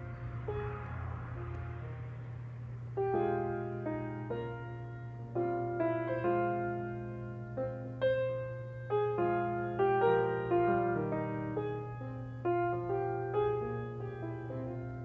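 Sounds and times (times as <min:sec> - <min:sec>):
slow piano melody: 0:00.0 - 0:15.0
steady low tone: 0:00.0 - 0:15.0.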